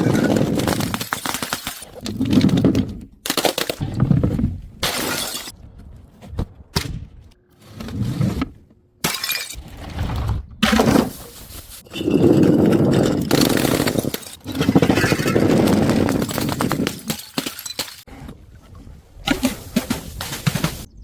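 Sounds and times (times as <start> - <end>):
glass bottles smashing: 4.8 - 5.5, 9.0 - 9.6, 10.9 - 15.4, 16.1 - 18.0.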